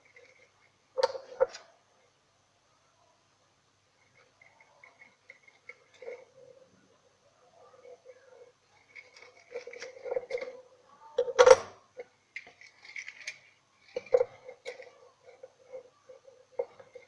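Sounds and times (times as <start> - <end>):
metal wire clicks and rustles: 7.9 - 10.6, 11.2 - 17.0.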